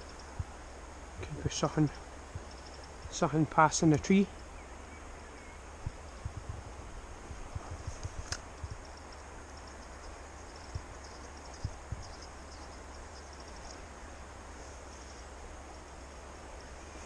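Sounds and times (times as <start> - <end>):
faint high chirping: 8.6 - 14.2.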